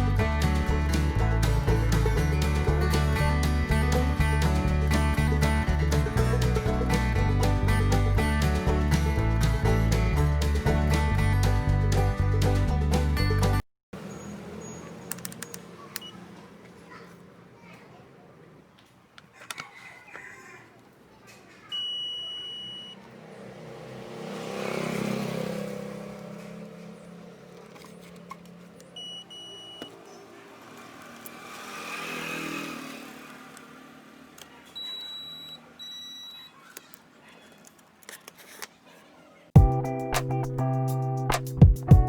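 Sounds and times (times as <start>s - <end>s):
rumbling noise: 0.0s - 13.1s
electronic beeps: 21.7s - 23.0s, 29.0s - 30.0s, 34.8s - 36.6s.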